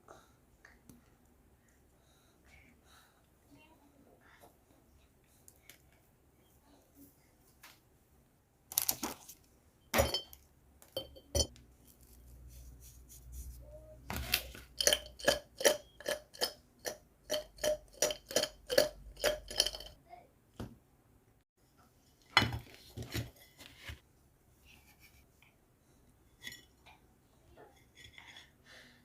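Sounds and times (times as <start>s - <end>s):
utensil clinking against a dish: 10.0s - 10.4s, 11.0s - 11.6s, 14.8s - 20.0s.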